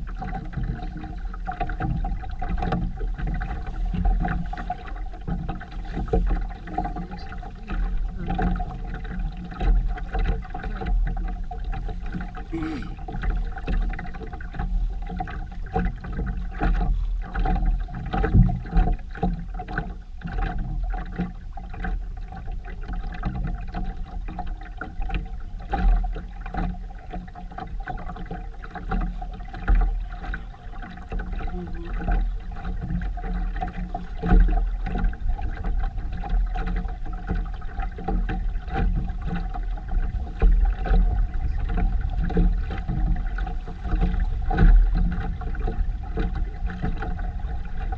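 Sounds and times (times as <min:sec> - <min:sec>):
water wash: 0:00.0 - 0:47.9
faint hum: 0:12.1 - 0:13.3
low buffeting: 0:12.4 - 0:13.1.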